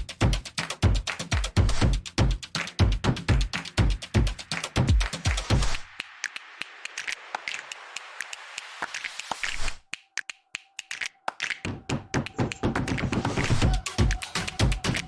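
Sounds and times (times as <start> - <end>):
bass beat: 0.0 - 5.8, 11.7 - 15.0
electronic music: 0.0 - 15.0.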